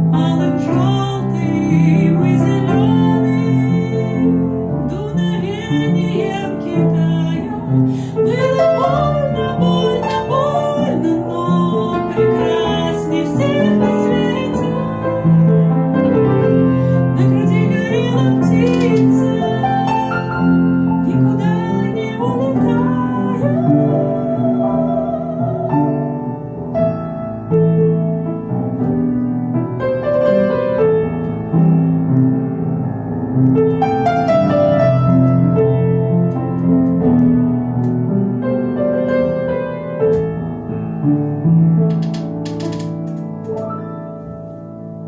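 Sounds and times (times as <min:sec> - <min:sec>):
piano accompaniment: 0:00.0 - 0:45.0
person singing with vibrato: 0:00.2 - 0:26.3.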